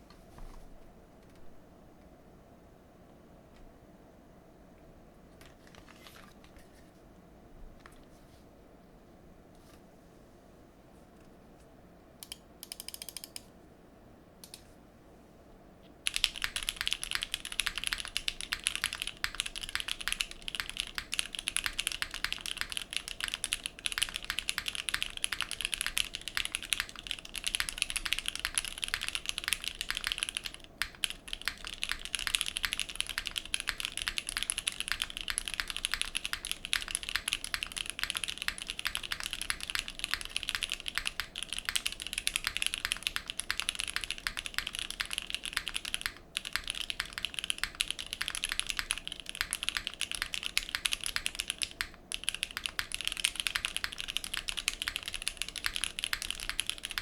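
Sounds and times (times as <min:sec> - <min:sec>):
mechanical keyboard typing: 0:12.2 - 0:13.5, 0:16.1 - 0:57.0.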